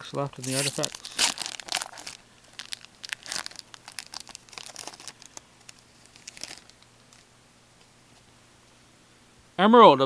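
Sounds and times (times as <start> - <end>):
foil wrapper tearing and crinkling: 0.4 - 7.2.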